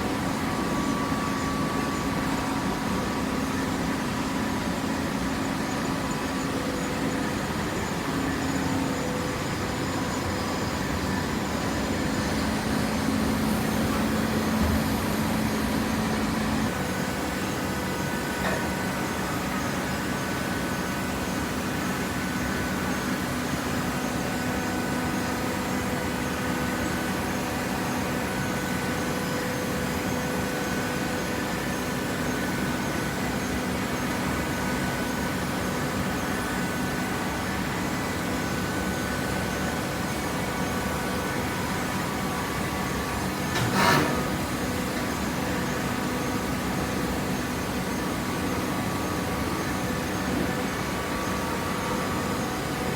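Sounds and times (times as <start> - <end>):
hydraulic baler motor humming: 11.5 - 19.6, 43.0 - 45.5.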